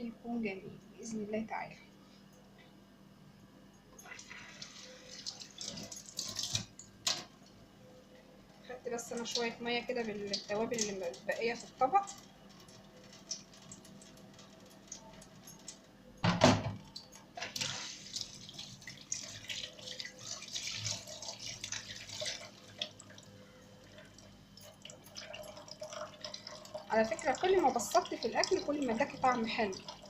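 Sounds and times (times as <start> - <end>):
water splashing and dripping: 9.1 - 15.8, 16.8 - 23.3.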